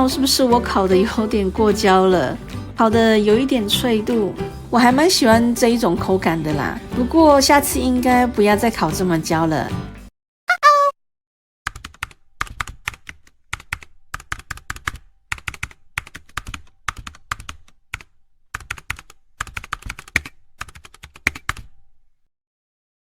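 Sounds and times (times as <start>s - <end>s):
rapid clicking and tapping: 11.7s - 21.7s.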